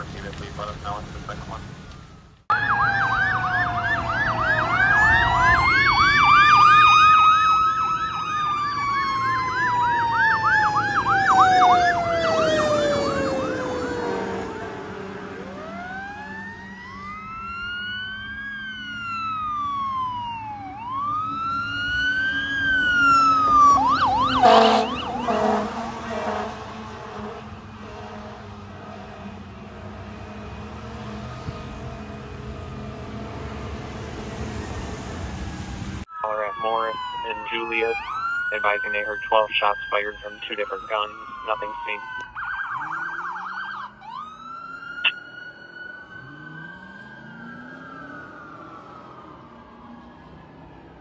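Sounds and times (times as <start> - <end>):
truck engine: 0.0 - 51.0
siren wail: 1.9 - 51.0
electronic siren yelp: 2.5 - 26.5, 36.0 - 50.0
air horn blasts: 24.3 - 28.5.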